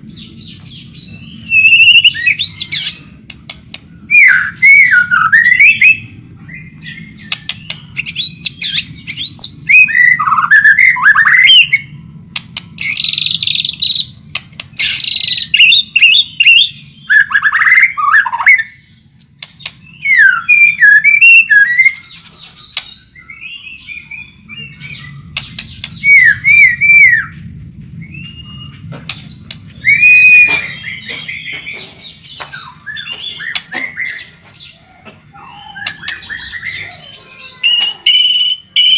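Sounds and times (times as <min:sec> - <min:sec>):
bird singing whistled phrases: 0:01.1 - 0:02.9, 0:06.9 - 0:11.9, 0:14.8 - 0:18.8, 0:19.7 - 0:27.4, 0:29.8 - 0:31.7, 0:35.4 - 0:38.9.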